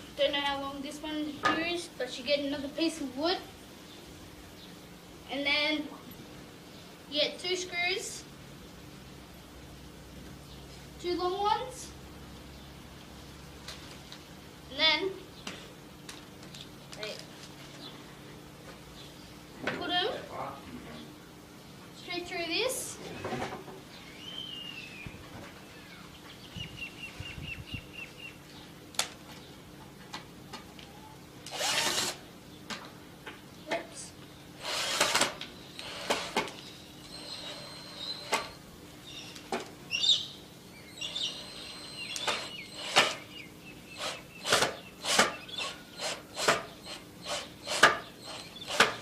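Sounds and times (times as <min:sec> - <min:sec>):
faint bird chirps: 0:23.9 - 0:28.7, 0:30.8 - 0:31.2, 0:36.6 - 0:46.1.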